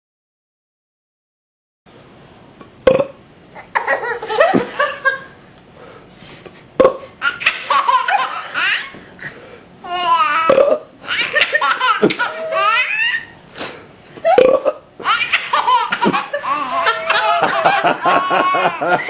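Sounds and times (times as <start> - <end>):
baby laughing: 3.6 - 4.7, 7.2 - 9.0, 9.8 - 13.4, 14.2 - 19.0.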